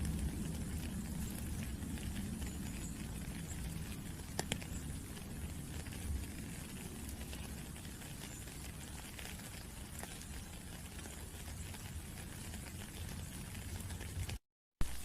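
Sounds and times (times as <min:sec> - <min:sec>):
low rumble: 0:00.0 - 0:07.8
rain pattering: 0:00.0 - 0:15.0.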